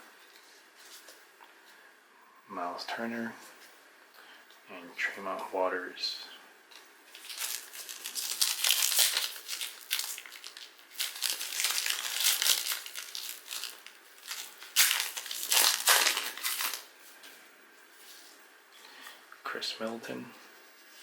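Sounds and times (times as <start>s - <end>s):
plastic wrapper crinkling: 6.7s - 16.9s.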